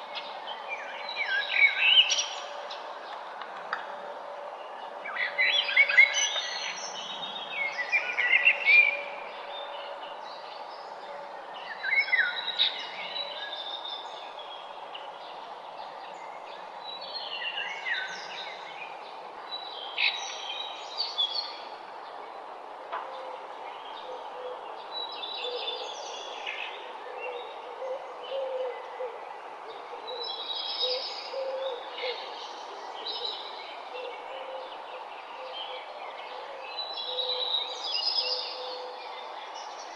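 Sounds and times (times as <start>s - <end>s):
background hiss: 0.0s - 39.9s
birds singing and chirping: 23.0s - 39.9s.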